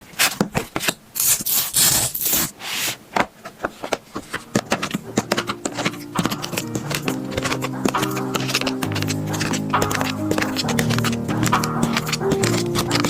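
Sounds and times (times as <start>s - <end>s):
music: 4.5s - 13.0s
drawing strokes on paper: 4.6s - 13.0s.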